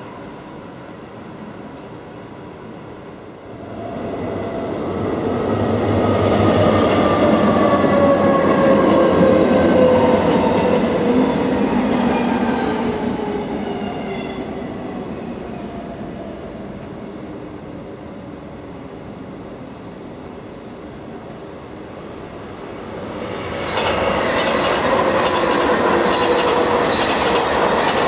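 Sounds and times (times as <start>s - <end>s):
train wheels on rails: 22.5s - 28.0s.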